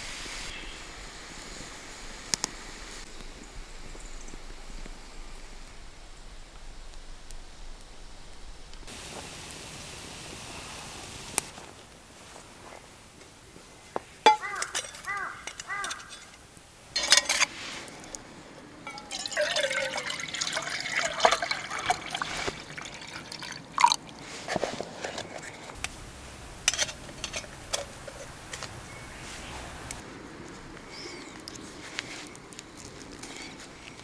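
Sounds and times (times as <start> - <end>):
liquid pouring and gurgling: 18.9 - 24.3.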